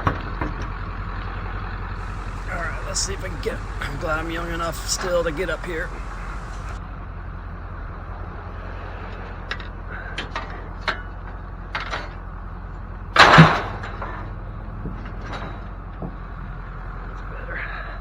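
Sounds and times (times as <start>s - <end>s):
loud metal bang: 2.0s - 6.8s, 13.2s - 14.4s
steady low hum: 2.0s - 7.4s
scrap metal knocks and clinks: 13.2s - 15.8s.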